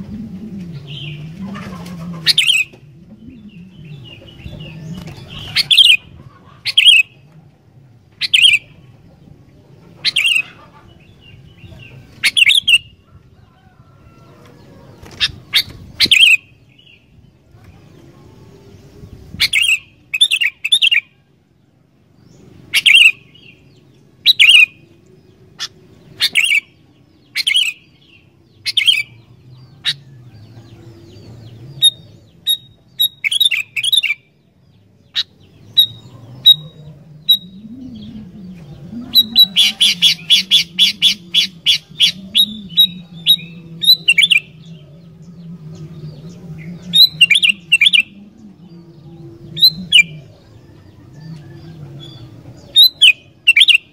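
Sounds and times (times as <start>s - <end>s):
faint low hum: 0.0s - 12.2s, 34.2s - 53.9s
bulbul singing: 8.1s - 8.8s, 22.2s - 53.9s.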